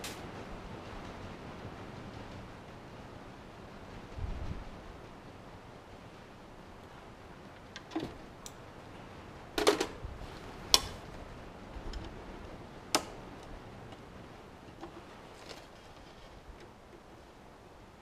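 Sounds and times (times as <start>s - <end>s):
sharp clicks and knocks: 9.6s - 10.0s, 10.7s - 11.0s, 12.9s - 14.1s.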